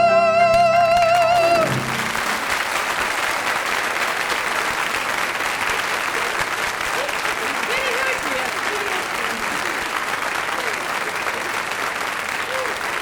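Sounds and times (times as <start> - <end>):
singer holding note with vibrato: 0.0 - 2.3
musical accompaniment: 0.0 - 3.4
audience applause: 0.5 - 13.0.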